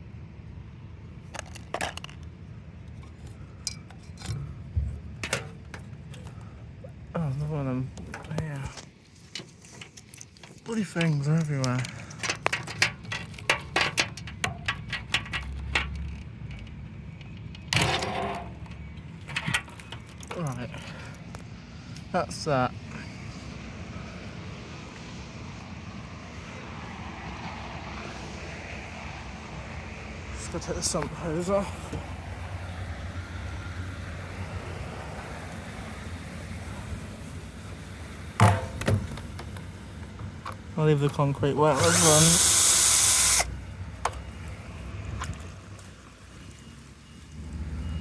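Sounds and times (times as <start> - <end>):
metallic clicks of parts handled: 1.3 - 4.5, 8.0 - 21.4.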